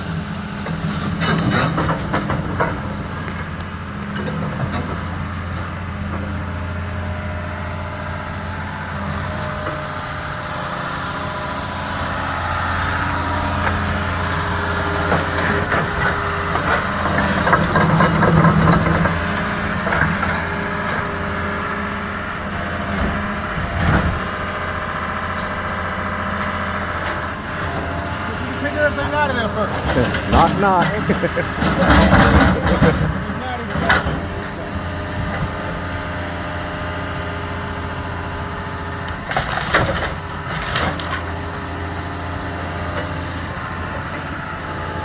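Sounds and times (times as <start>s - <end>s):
heavy machine engine running: 0.0s - 45.0s
clattering and cracking: 15.1s - 20.4s, 29.8s - 34.5s.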